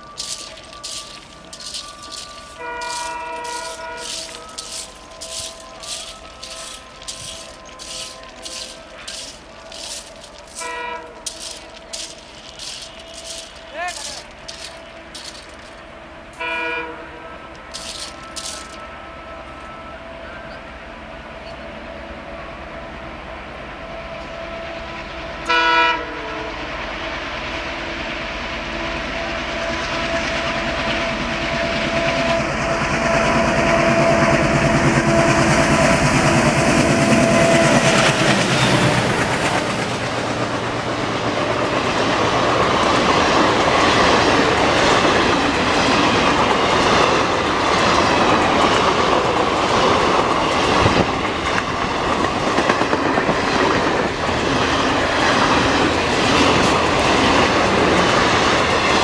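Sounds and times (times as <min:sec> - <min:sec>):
diesel locomotive engines whining: 0:00.0 - 0:59.0
train horn blast: 0:00.2 - 0:20.7, 0:23.8 - 0:27.2, 0:28.8 - 0:39.9
wheels clacking over rail joints: 0:33.8 - 0:59.0.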